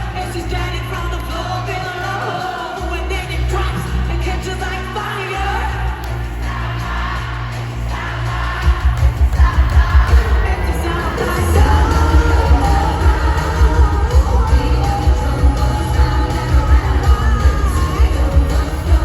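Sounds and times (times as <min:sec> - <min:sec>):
amplified band with heavy bass: 0:00.0 - 0:19.0
fast punchy drum beat: 0:07.8 - 0:19.0
woman singing: 0:09.3 - 0:19.0.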